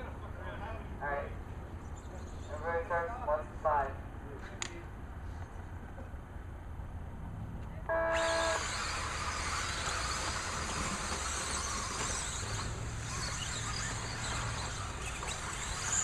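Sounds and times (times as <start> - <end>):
electronic start tone: 7.9 - 8.8
electric rc trucks motor whine: 7.9 - 16.0.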